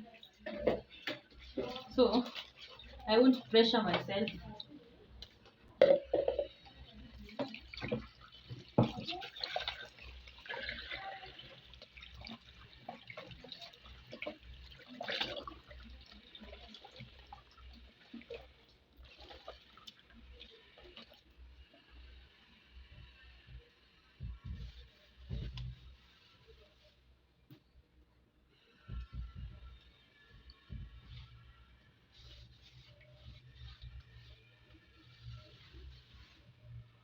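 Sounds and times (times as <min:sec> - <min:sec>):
tap water running into sink: 0:00.4 - 0:26.1
knocks and clatters of handling: 0:05.2 - 0:06.7.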